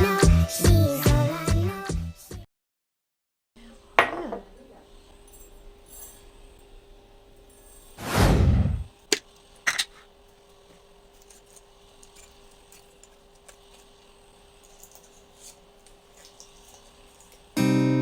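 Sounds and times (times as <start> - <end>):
small objects clicking and rustling: 10.7 - 17.6
acoustic guitar music: 17.6 - 18.0.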